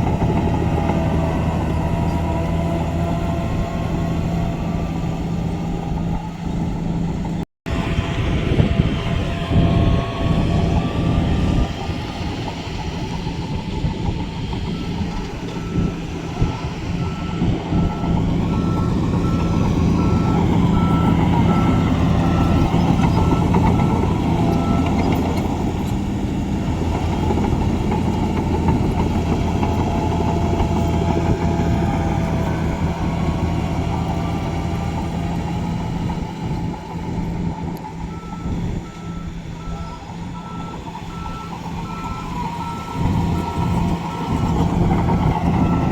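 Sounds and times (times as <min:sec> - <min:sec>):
diesel construction machine running: 0:00.0 - 0:45.9
reversing alarm beeping: 0:07.8 - 0:25.8, 0:38.0 - 0:45.9.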